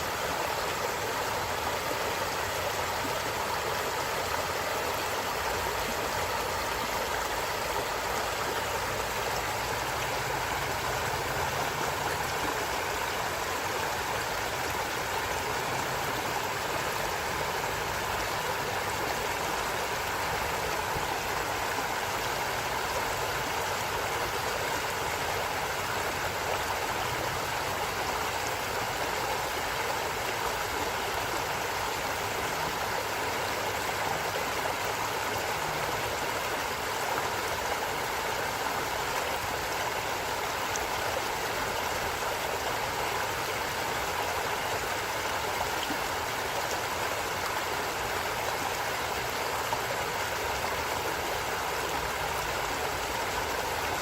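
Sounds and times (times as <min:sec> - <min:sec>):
water flowing over rocks: 0:00.0 - 0:54.0.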